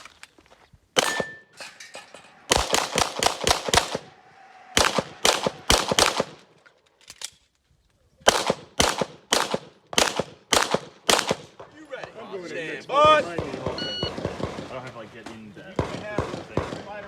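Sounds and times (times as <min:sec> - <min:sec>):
pistol firing rapid shots: 0:01.0 - 0:01.4, 0:02.5 - 0:04.1, 0:04.8 - 0:06.4, 0:08.3 - 0:11.6, 0:13.4 - 0:14.8, 0:15.8 - 0:17.0.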